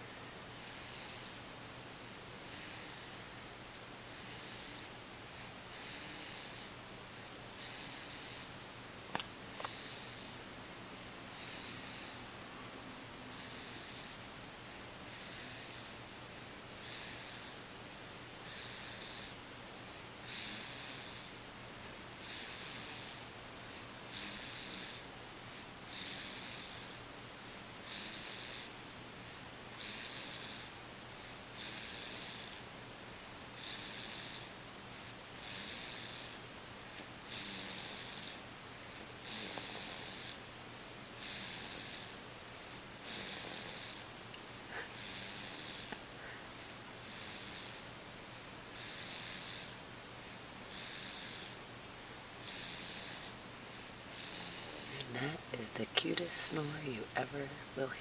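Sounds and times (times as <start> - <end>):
baby snoring: 2.4 - 3.2, 5.7 - 6.6, 13.4 - 14.2, 15.1 - 15.9, 16.8 - 17.6, 18.4 - 19.4, 20.2 - 21.3, 22.2 - 23.2, 24.1 - 25.1, 25.9 - 27.0, 27.8 - 28.8, 29.7 - 30.7, 31.6 - 32.7, 33.6 - 34.5, 35.4 - 38.4, 39.2 - 40.4, 41.2 - 42.2, 43.0 - 44.0, 44.7 - 46.4, 47.0 - 47.9, 48.8 - 49.8, 50.7 - 51.6, 52.5 - 53.4, 54.1 - 56.2.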